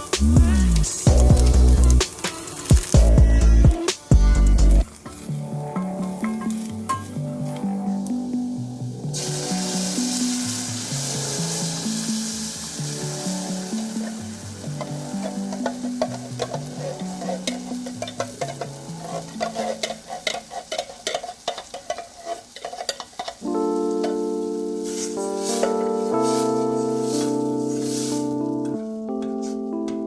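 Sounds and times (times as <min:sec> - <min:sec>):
background music: 0:00.0 - 0:21.1, 0:23.4 - 0:30.0
food sizzling in a pan: 0:00.0 - 0:29.7
utensil tapping against a pan: 0:14.8 - 0:24.2.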